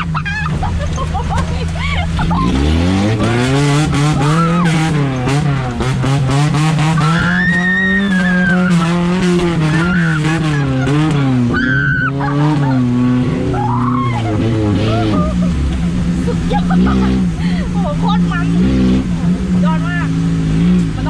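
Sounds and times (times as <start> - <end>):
knocks and rattles: 0.0 - 6.8
off-road engine revving under load: 0.0 - 21.0.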